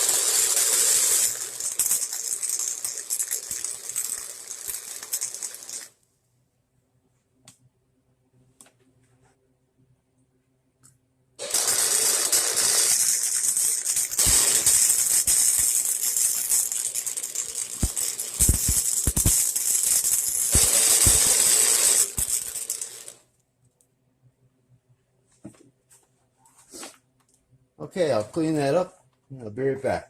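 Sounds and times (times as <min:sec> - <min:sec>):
welding arc crackling and sizzling: 0:00.0 - 0:06.0, 0:11.4 - 0:23.2.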